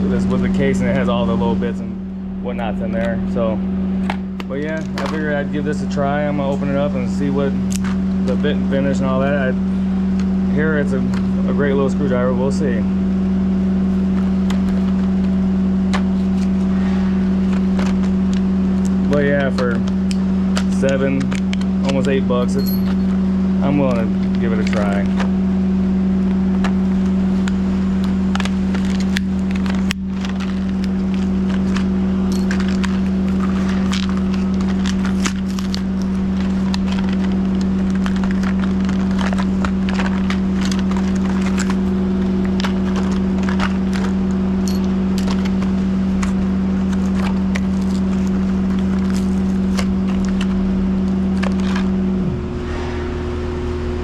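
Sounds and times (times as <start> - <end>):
steady hum: 0.0 - 54.0
screwdriver bits rattling: 28.4 - 35.8, 36.4 - 41.8, 42.6 - 46.3, 47.0 - 50.4.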